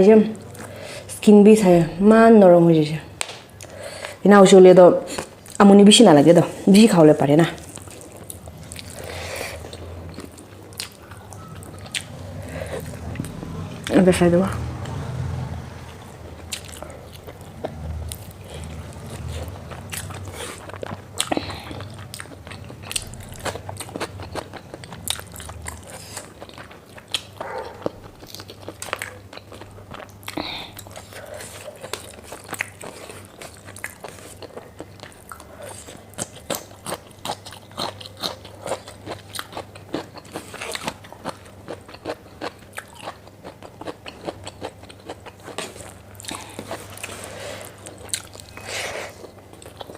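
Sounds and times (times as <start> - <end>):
food crunching: 7.4 - 49.9
person chewing food: 7.6 - 13.9, 14.6 - 49.9.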